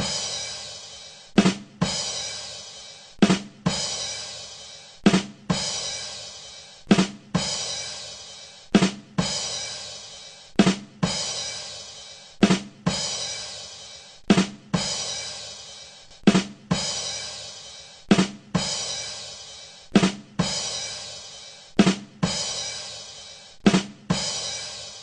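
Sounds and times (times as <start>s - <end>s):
drum hits: 0.0s - 0.3s, 18.1s - 18.7s.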